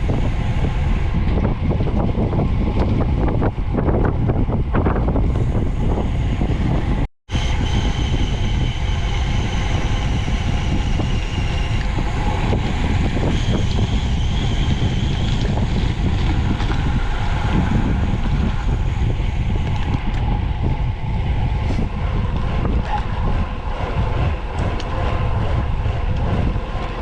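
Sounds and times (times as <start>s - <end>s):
road noise while cycling: 0.0s - 27.0s
wind buffeting microphone: 0.0s - 27.0s.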